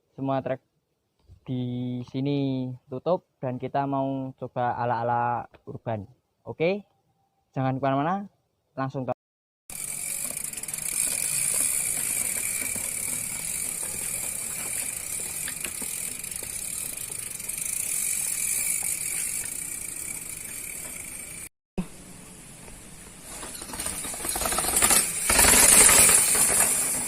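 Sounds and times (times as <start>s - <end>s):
bike freehub buzzing: 9.7s - 27.0s.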